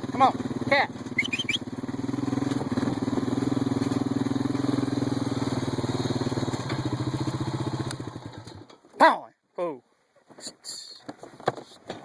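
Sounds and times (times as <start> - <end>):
small engine running: 0.0 - 8.7.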